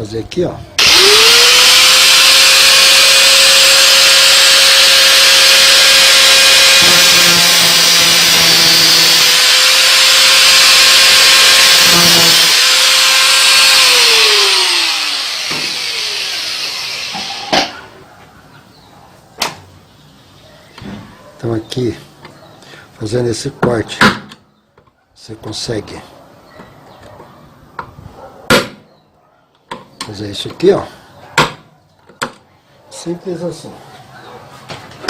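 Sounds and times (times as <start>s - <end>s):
electric grinder whining: 0.8s - 17.8s.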